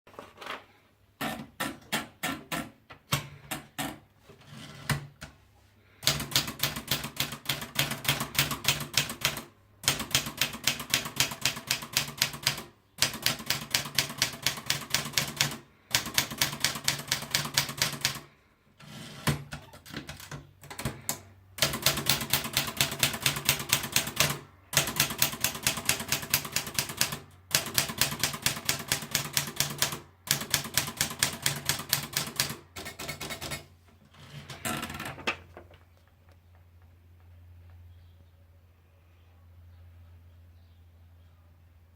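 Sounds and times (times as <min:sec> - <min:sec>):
typewriter keystrokes: 0:06.0 - 0:18.3, 0:19.2 - 0:33.7.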